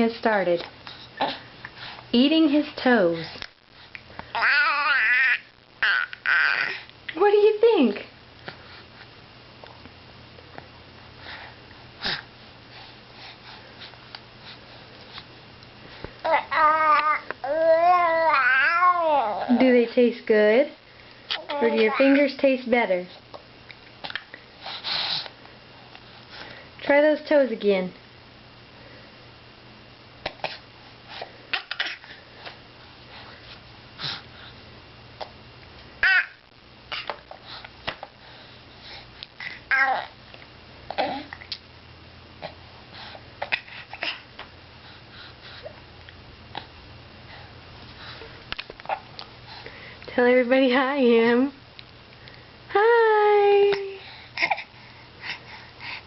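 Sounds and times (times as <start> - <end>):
high-pitched baby vocalisation: 4.3 - 6.9, 16.2 - 19.6, 21.3 - 22.2, 36.0 - 37.1, 39.4 - 40.1
baby squealing: 4.4 - 6.8
baby mouth clicks and breathing: 23.3 - 24.4
baby breathy sniffs: 24.6 - 25.4.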